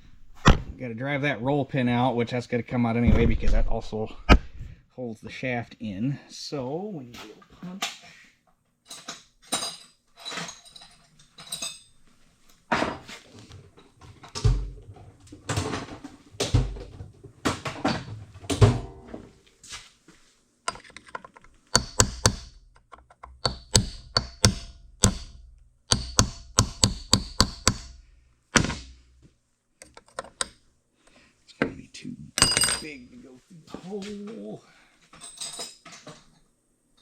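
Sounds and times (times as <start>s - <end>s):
metal tools clattering: 8.9s - 12.1s, 32.4s - 33.0s, 35.1s - 36.4s
hammer tapping on metal punch: 21.7s - 22.6s, 23.2s - 28.0s, 28.6s - 29.0s.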